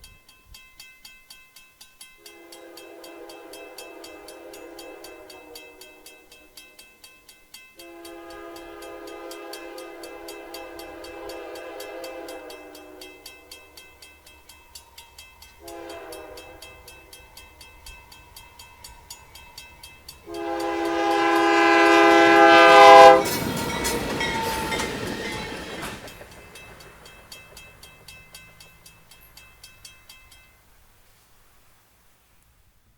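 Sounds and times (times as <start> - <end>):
locomotive air horn blasts: 2.2 - 6.4, 7.8 - 13.7, 15.6 - 17.1, 20.2 - 26.0
wheels clacking over rail joints: 2.2 - 30.9
locomotive passing rush: 2.3 - 6.6, 7.8 - 31.0.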